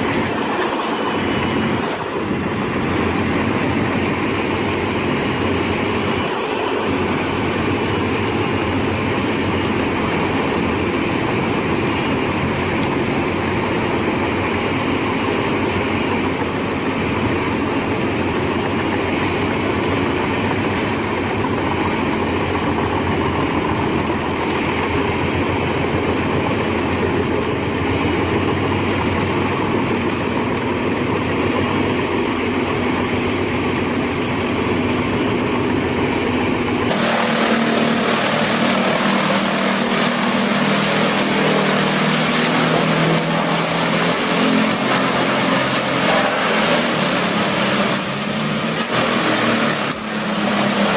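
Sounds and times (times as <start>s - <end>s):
heavy machinery running: 0.0s - 50.9s
hissy machine noise: 36.9s - 50.9s.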